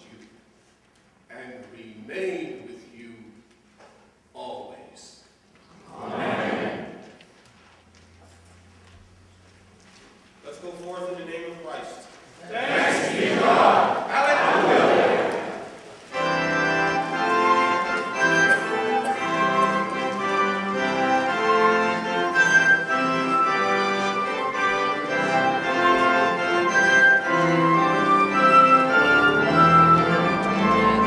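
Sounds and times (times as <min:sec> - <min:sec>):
organ playing chords: 0:12.7 - 0:31.0.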